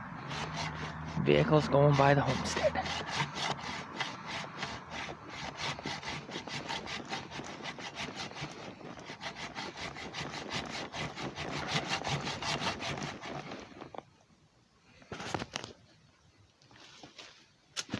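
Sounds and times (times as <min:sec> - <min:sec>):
saw rasping through wooden log: 0:00.0 - 0:14.0.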